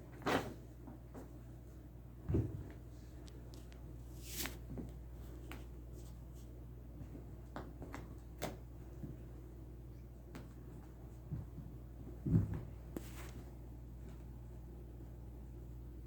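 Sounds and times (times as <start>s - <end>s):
steady low hum: 0.0s - 16.0s
cats scuffling on floor: 2.3s - 9.5s, 10.2s - 14.6s.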